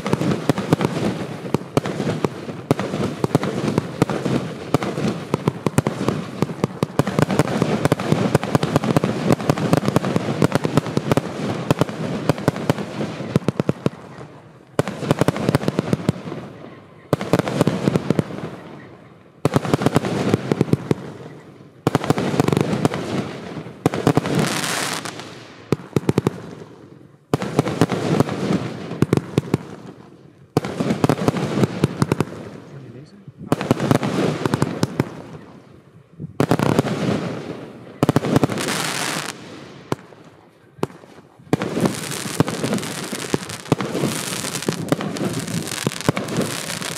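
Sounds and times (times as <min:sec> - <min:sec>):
firework batteries firing: 0:36.4 - 0:46.9
firework hiss: 0:41.5 - 0:46.9.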